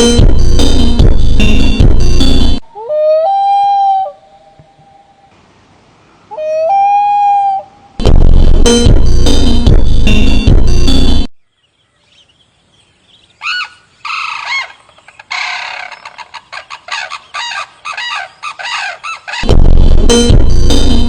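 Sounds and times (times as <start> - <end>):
loud music: 0.0 - 2.6, 8.0 - 11.3, 19.4 - 21.0
bird calling: 6.2 - 8.0, 11.6 - 19.5.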